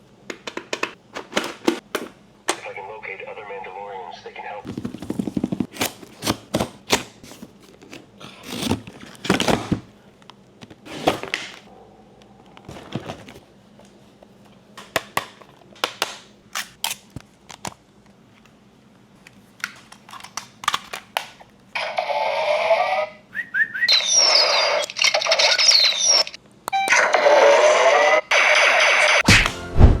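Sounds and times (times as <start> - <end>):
packaging rustling: 4.7 - 11.7, 12.5 - 13.8.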